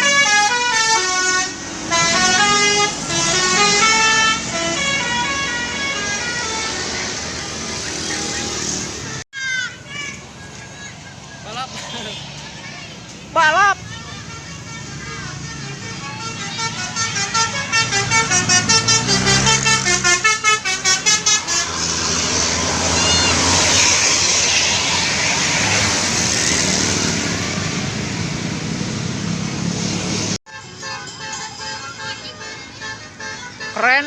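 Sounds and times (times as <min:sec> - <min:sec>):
bus horn multi-note melody: 0:00.0 - 0:09.2, 0:14.2 - 0:23.6, 0:30.5 - 0:34.0
bus passing by: 0:00.0 - 0:34.0.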